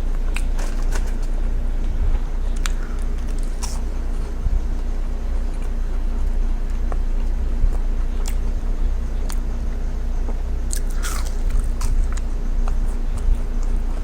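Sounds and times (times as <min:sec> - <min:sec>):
chewing and biting food: 0:00.0 - 0:14.0
steady low hum: 0:00.0 - 0:14.0.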